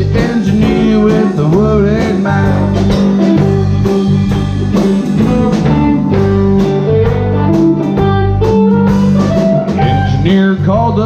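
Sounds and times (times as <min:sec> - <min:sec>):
bass notes: 0:00.0 - 0:11.0
blues guitar melody: 0:00.0 - 0:11.0.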